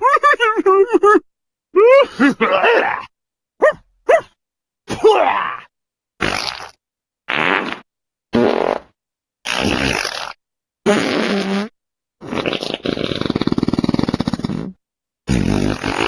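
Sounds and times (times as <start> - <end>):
toy fart sound effects: 6.2 - 16.0.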